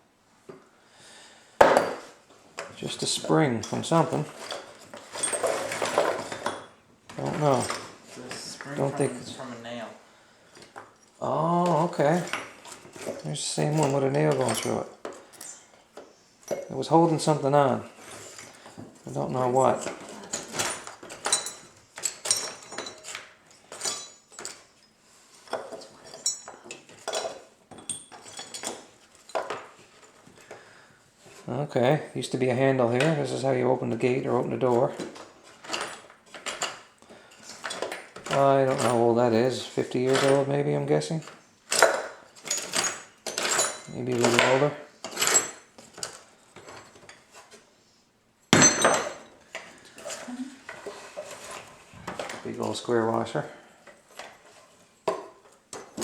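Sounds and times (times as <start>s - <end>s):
metal hardware clattering: 3.4s - 9.1s, 11.6s - 15.7s, 19.4s - 24.9s, 35.0s - 40.5s, 41.2s - 47.3s, 48.5s - 49.4s
metal hardware clinking: 11.7s - 15.7s, 19.5s - 29.6s, 41.7s - 47.2s, 48.5s - 50.2s.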